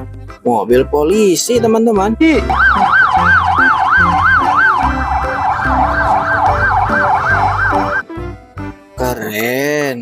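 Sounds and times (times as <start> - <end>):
background music with steady beat: 0.0 - 10.0
electronic siren wailing: 2.5 - 8.0.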